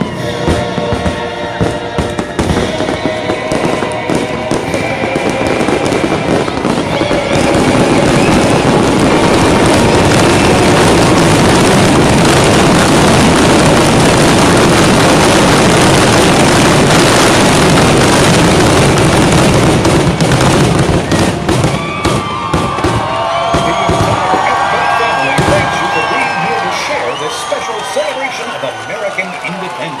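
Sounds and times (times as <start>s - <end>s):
crowd cheering and whistling: 0.0s - 19.4s, 20.0s - 30.0s
fireworks bangs and crackle: 0.0s - 30.0s.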